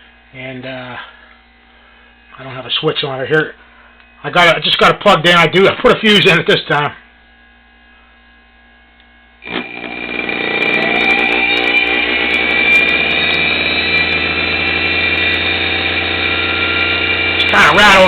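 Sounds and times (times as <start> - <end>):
electric motor whining: 9.4 - 18.0.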